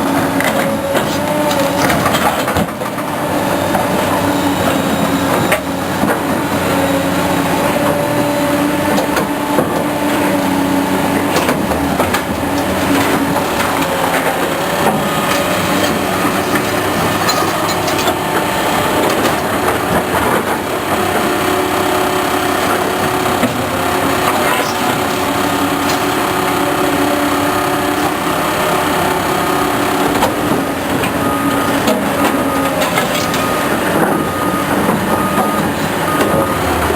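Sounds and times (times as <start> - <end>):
heavy diesel engines running: 0.0 - 36.9
machinery knocks and clatter: 0.2 - 4.0, 11.0 - 21.1, 22.7 - 28.4, 31.8 - 34.2.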